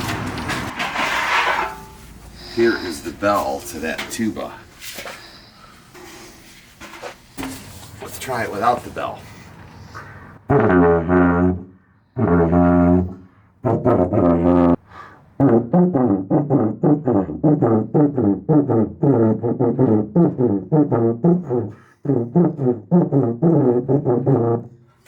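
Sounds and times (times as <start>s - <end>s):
tuba notes: 10.4s - 25.0s.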